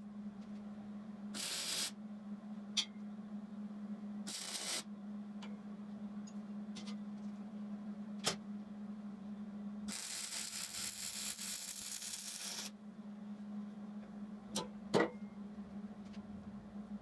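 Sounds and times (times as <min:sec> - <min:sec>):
steady hum: 0:00.0 - 0:17.0
welder arc crackling: 0:01.4 - 0:01.9, 0:04.3 - 0:04.8, 0:09.9 - 0:12.7.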